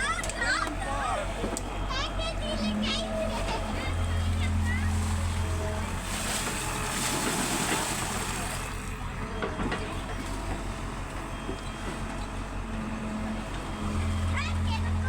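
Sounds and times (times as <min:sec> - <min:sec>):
vehicle rumbling: 0:00.0 - 0:15.0.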